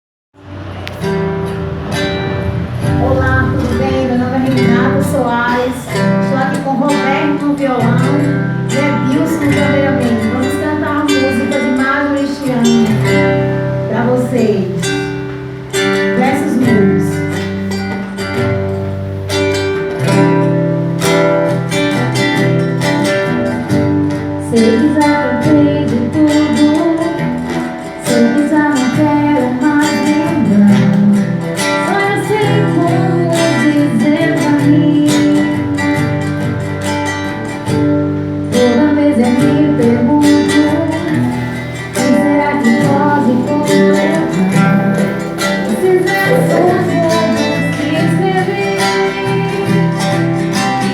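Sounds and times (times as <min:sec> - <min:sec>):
strummed acoustic guitar: 0:00.4 - 0:50.9
person singing: 0:02.4 - 0:15.2, 0:24.4 - 0:36.5, 0:38.5 - 0:50.9
steady beat: 0:41.2 - 0:50.9.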